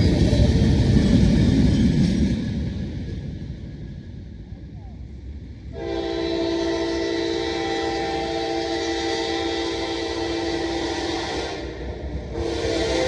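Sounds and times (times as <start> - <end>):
locomotive air horn: 5.7 - 13.0.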